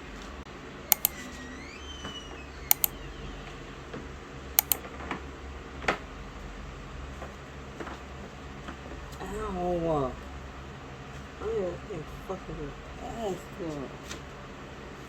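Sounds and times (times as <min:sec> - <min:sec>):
sharp double clicks: 0:00.9 - 0:01.1, 0:02.7 - 0:02.9, 0:04.6 - 0:04.8.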